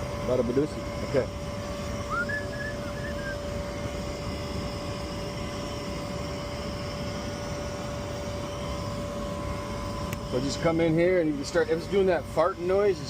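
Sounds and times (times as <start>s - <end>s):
gas furnace running: 0.0s - 13.0s
high whistle-like glide: 2.0s - 3.5s.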